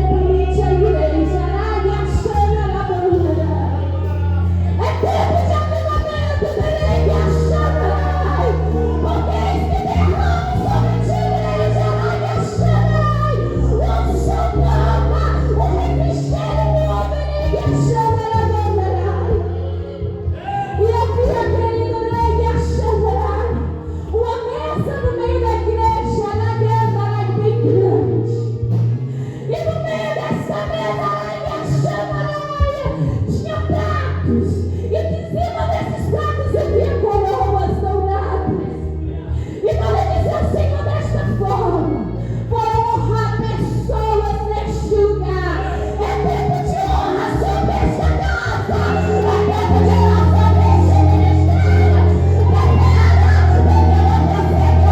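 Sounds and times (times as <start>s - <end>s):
people singing: 0.0s - 19.6s, 44.0s - 54.9s
sustained bass line: 0.0s - 54.9s
band playing: 47.1s - 54.9s.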